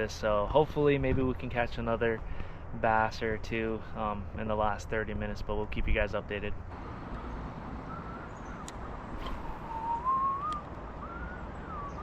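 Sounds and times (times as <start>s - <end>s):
faint gliding whistling: 7.2s - 12.0s.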